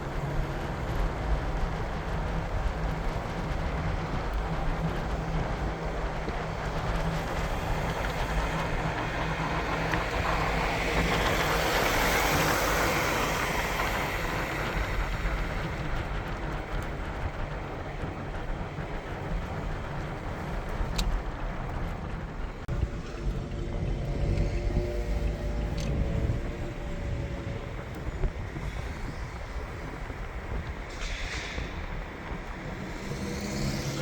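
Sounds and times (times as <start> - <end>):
traffic rumble: 0.0 - 34.0.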